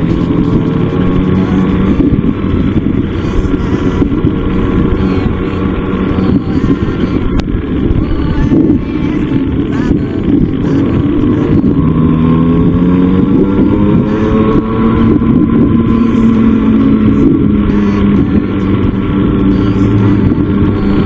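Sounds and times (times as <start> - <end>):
small motorbike engine revving: 0.0 - 21.0.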